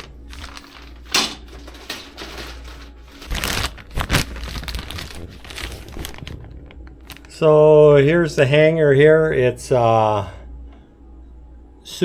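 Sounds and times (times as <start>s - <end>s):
plastic knocks and rustles: 0.0s - 7.2s
steady low hum: 0.0s - 12.0s.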